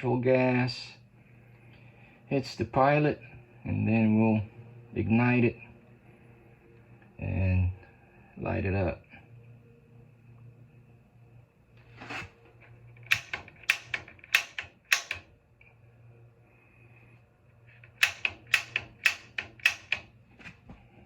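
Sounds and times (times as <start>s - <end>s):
igniter snapping clicks: 13.0s - 15.4s, 17.8s - 20.2s.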